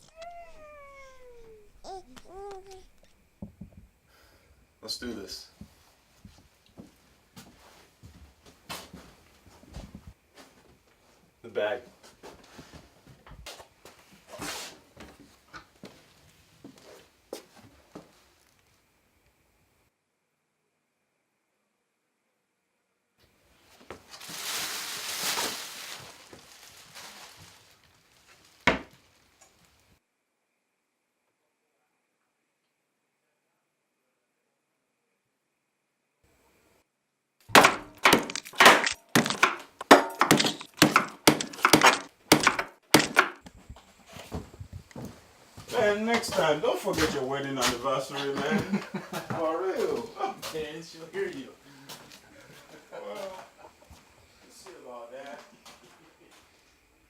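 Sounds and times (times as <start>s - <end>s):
short rustle: 23.7s - 29.9s
hard blows smashing material: 37.5s - 43.4s
objects knocking and clicking: 37.5s - 43.5s.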